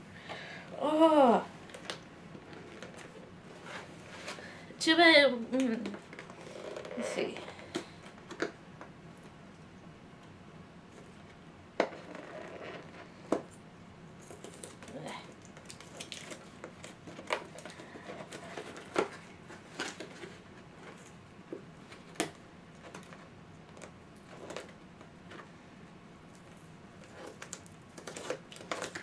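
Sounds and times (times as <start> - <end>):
packaging rustling and crinkling: 1.6 - 4.7, 14.2 - 25.5, 26.4 - 29.0.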